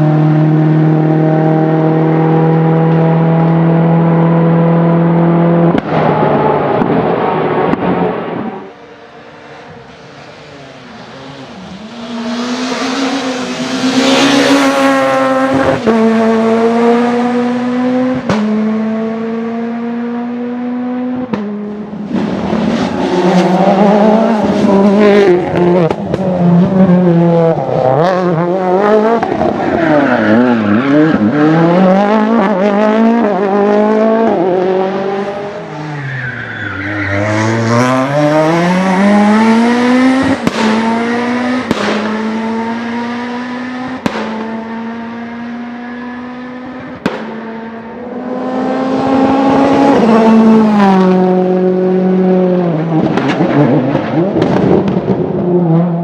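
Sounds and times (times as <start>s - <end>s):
rally car engines revving: 0.0s - 56.0s
tyre squeal: 35.8s - 37.6s.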